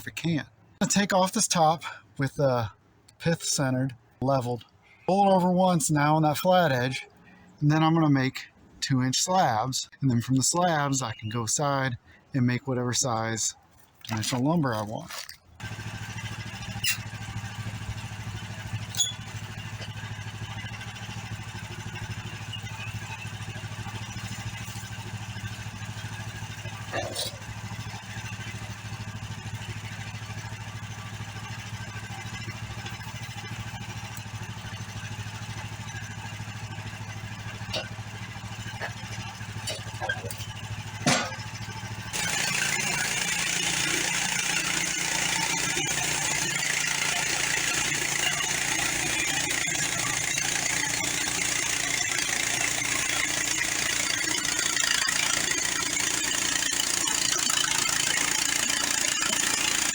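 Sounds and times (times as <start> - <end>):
sawmill engine: 0.8 - 59.9
sharp metal clank: 41.0 - 41.4.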